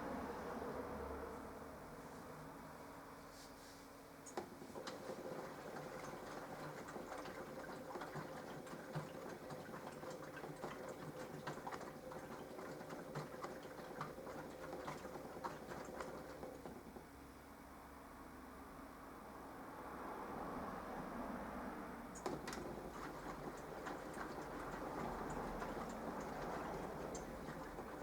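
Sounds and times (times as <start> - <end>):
washing machine motor hum: 4.3 - 17.5, 22.1 - 28.0
water sloshing: 4.9 - 16.8, 22.2 - 28.0.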